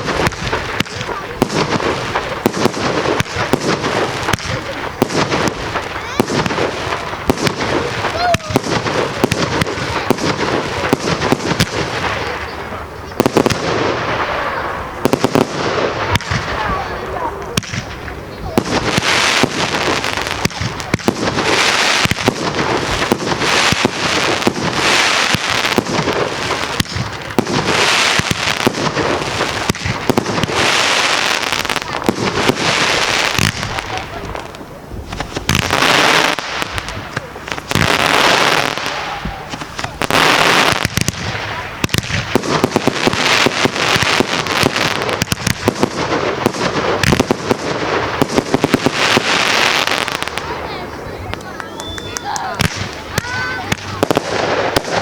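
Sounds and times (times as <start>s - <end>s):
fireworks banging: 0.0s - 55.0s
fireworks hissing crackle: 0.0s - 55.0s.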